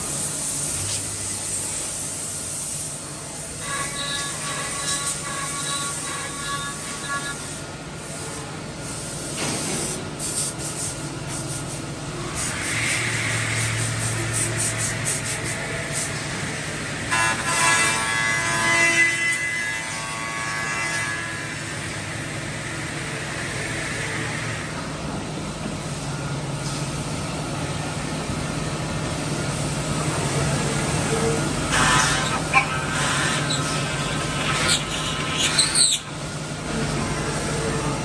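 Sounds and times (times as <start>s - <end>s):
high machine whine: 11.9s - 38.0s.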